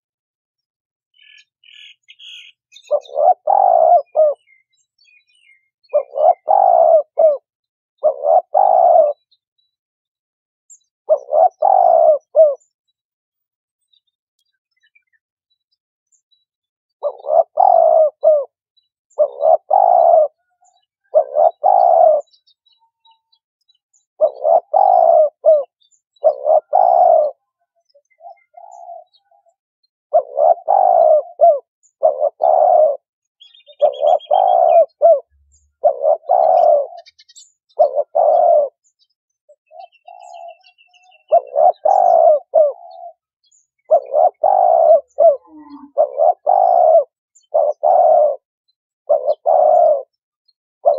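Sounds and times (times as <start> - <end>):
faint bird chirps: 1.1 - 9.8, 10.7 - 13.0, 13.8 - 50.9
dove cooing: 1.6 - 4.7, 5.3 - 9.3, 11.1 - 12.7, 17.0 - 22.4, 24.2 - 38.9, 39.6 - 50.2.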